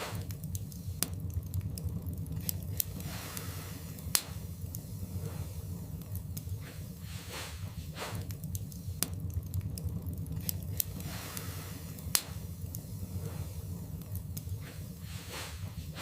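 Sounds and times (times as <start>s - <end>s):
fire crackling and popping: 0.0s - 16.0s
fire flames rumbling: 0.0s - 16.0s.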